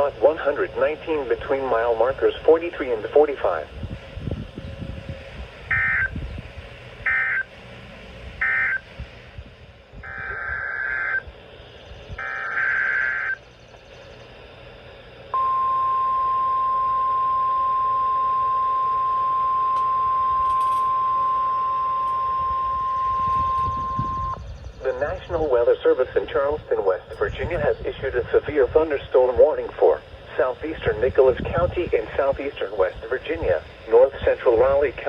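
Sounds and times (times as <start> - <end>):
piercing warning alarm tone: 0.0 - 35.0
screeching digital data bursts: 5.7 - 6.3, 7.0 - 7.5, 8.4 - 8.8, 10.0 - 14.1.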